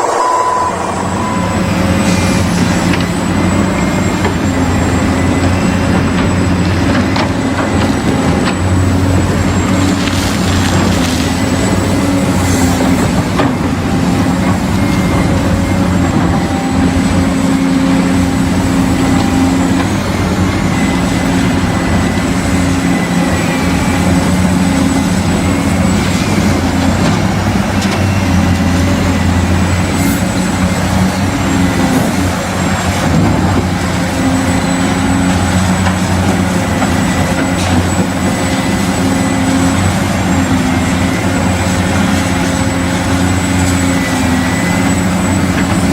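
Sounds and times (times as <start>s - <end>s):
faint high whine: 0.0s - 3.9s
loud engine-like drone: 0.0s - 45.9s.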